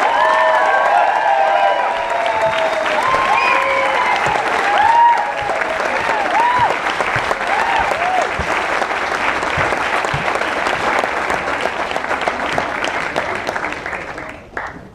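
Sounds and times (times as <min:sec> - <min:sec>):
whoops: 0:00.0 - 0:08.3
audience applauding: 0:00.0 - 0:14.9.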